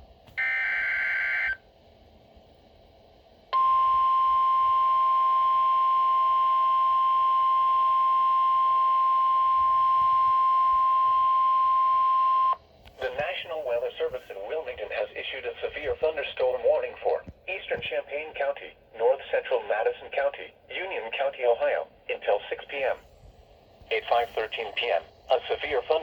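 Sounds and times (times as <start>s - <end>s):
faint static: 0.0s - 26.0s
steady warning alarm tone: 0.4s - 1.6s, 3.6s - 12.6s.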